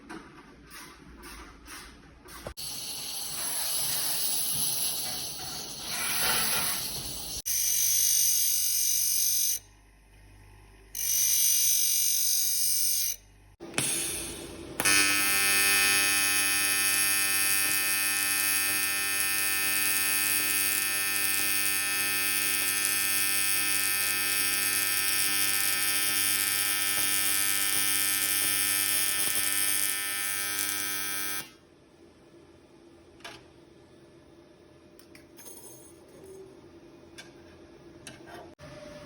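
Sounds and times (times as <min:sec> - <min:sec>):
welding arc buzzing: 0:02.5 - 0:09.6, 0:11.0 - 0:31.6.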